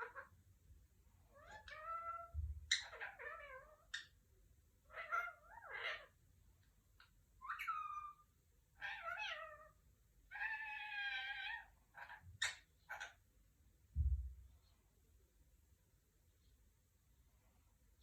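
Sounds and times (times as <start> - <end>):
parrot calling: 0.0 - 0.4, 1.3 - 4.1, 4.8 - 6.2, 7.0 - 13.2.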